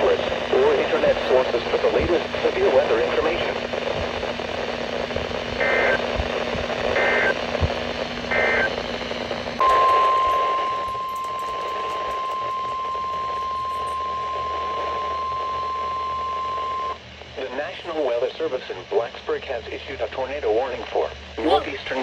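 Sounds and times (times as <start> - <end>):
radio static: 0.0 - 9.3, 21.4 - 21.9
steady warning alarm tone: 8.3 - 17.0.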